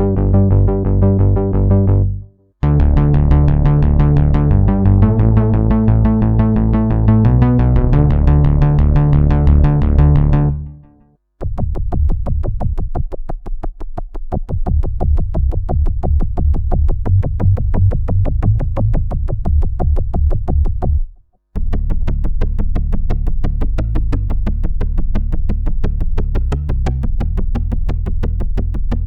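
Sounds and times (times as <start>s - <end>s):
low synth bass: 0.0s - 13.1s, 14.3s - 29.0s.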